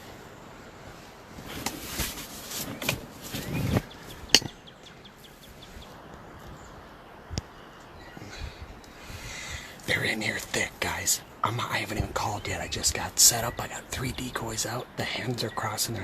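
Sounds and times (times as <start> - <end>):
gear rustling near microphone: 0.0 - 7.0, 7.8 - 16.0
small bird chirping: 3.3 - 9.0.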